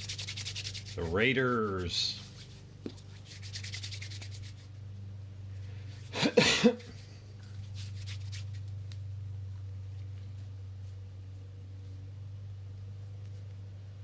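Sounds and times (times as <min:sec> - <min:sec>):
steady low hum: 0:00.0 - 0:14.0
person coughing: 0:06.1 - 0:07.0.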